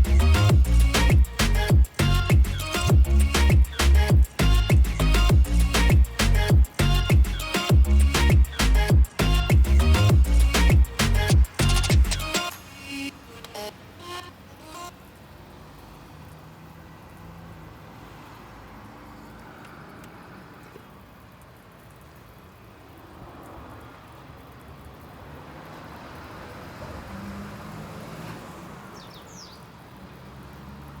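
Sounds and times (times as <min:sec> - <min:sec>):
vehicle engine running: 0:00.0 - 0:12.4
bird chirp: 0:28.9 - 0:29.7.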